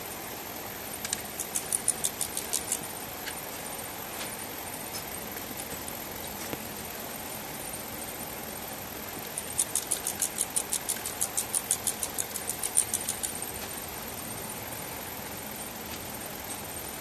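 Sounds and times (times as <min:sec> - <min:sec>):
steady hiss: 0:00.0 - 0:17.0
rapid sharp high clicks: 0:01.0 - 0:03.4, 0:09.3 - 0:13.6.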